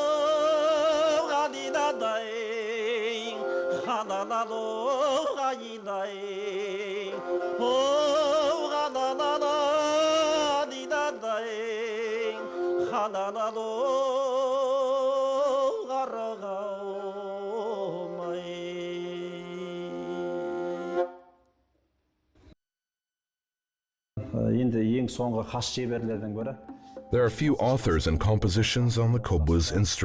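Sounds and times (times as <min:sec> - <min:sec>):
folk melody with wide vibrato: 0:00.0 - 0:14.2, 0:16.8 - 0:21.3.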